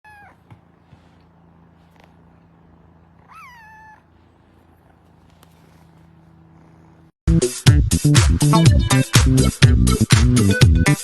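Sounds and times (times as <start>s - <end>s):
cat meowing: 0.0s - 0.6s, 3.2s - 4.1s.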